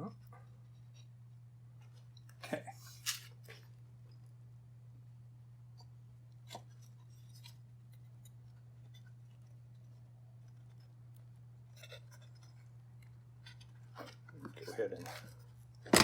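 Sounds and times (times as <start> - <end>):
steady low hum: 0.0 - 16.0
wooden pieces clicking and knocking: 13.4 - 16.0.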